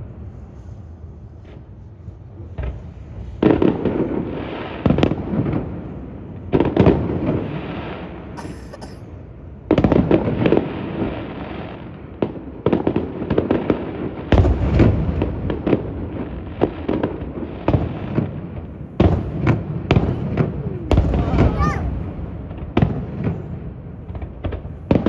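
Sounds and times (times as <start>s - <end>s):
fireworks bangs and crackling: 0.0s - 9.0s, 9.6s - 25.0s
heavy firework bursts: 6.6s - 9.0s, 16.6s - 25.0s.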